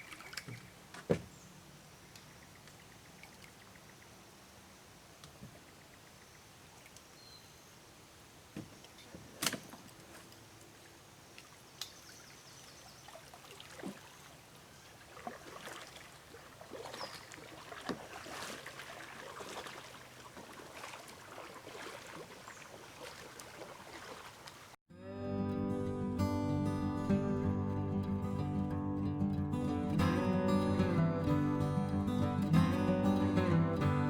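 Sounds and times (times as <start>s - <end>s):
water splashes: 0.0s - 0.9s, 2.2s - 4.1s, 9.2s - 24.8s
canoe knocks: 0.4s - 1.4s, 16.7s - 24.2s.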